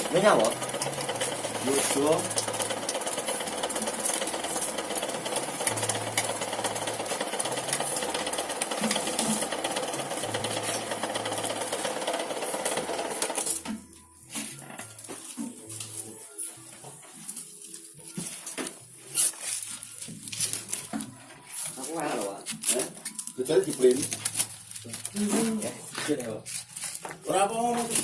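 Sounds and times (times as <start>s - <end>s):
electric onion slicer running: 0.0s - 13.8s.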